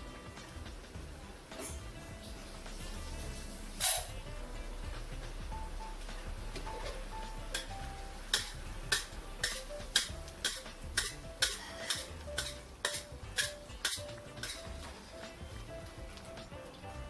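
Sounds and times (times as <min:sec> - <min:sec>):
faint background music: 0:00.0 - 0:17.0
metal utensil clinking against pan: 0:06.7 - 0:14.7.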